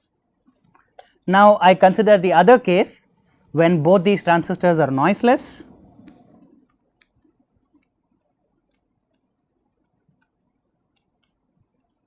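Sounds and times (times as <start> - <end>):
pen writing clicks and taps: 6.0 - 12.0.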